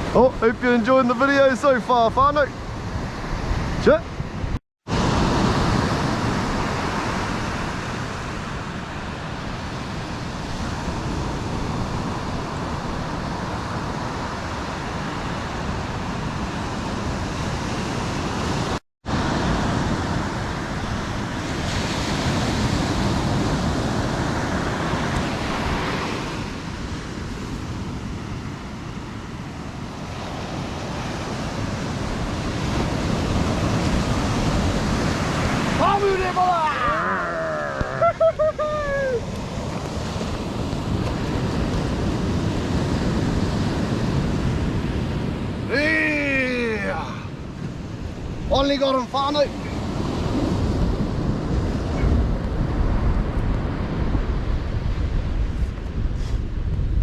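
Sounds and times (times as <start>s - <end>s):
wind on microphone: 1.4s - 57.0s
surf breaking on beach: 4.9s - 57.0s.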